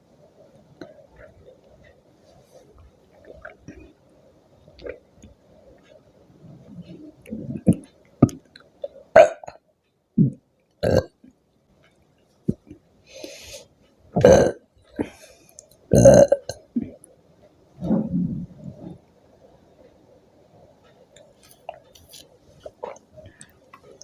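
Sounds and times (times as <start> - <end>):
woman burping: 9.2 - 9.5, 10.2 - 11.1, 14.2 - 15.2, 15.9 - 16.9.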